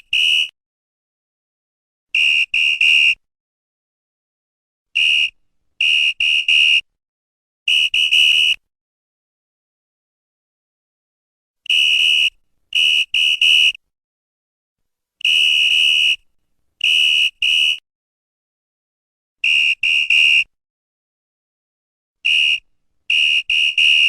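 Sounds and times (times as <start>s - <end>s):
referee's whistle blasts: 11.7s - 13.8s, 16.8s - 17.8s, 22.2s - 24.0s.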